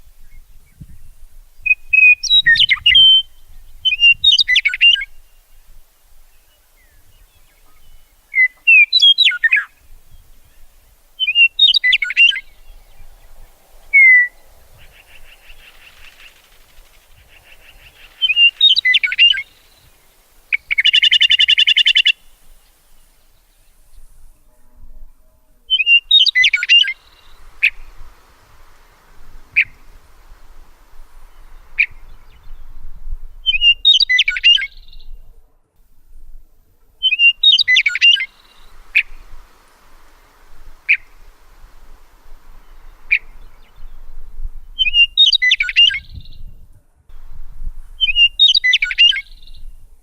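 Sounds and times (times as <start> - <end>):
harsh buzzy bird call: 10.6 - 23.1, 25.7 - 32.8, 37.0 - 44.0
sharp bird chirps: 11.2 - 22.4.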